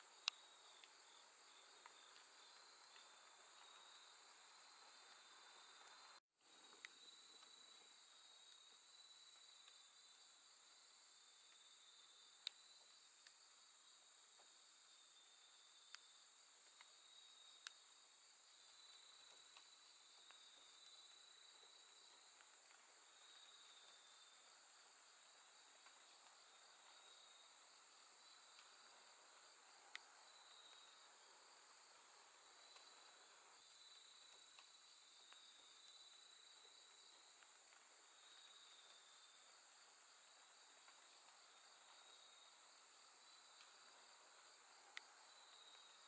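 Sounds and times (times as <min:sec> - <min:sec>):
insect chirps: 0:00.0 - 0:46.0
crickets trilling: 0:16.8 - 0:46.0.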